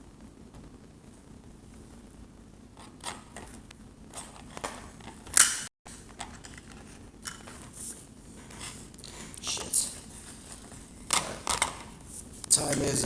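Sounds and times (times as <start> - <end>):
handling clicks and rustles: 2.8 - 13.0.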